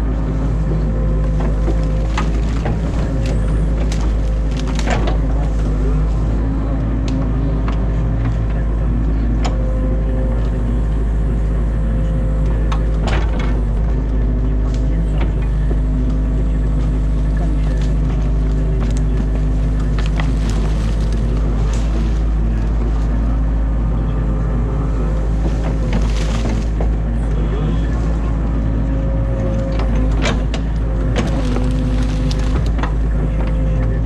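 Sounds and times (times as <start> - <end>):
diesel engine running: 0.0 - 34.0
branches snapping: 1.2 - 6.2, 16.8 - 23.1, 25.3 - 27.0, 29.5 - 33.6.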